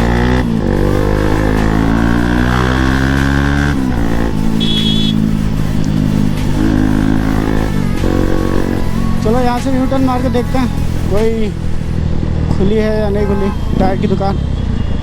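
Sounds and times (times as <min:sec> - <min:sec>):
motorcycle engine revving: 0:00.0 - 0:15.0
high beep: 0:03.9 - 0:05.4.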